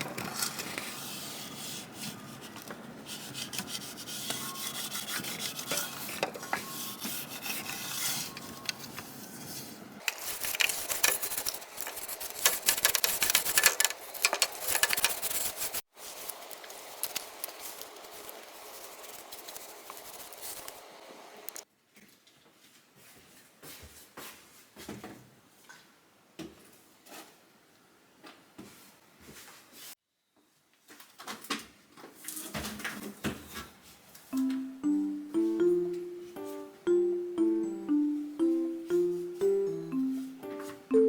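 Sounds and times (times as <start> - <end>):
rubbing and scrubbing on surface: 0.9 - 8.3, 14.6 - 15.8.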